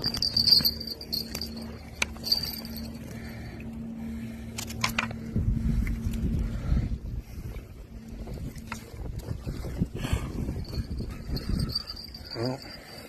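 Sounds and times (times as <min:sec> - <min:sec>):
steady low hum: 0:00.0 - 0:13.0
wind rumble on microphone: 0:04.8 - 0:12.8.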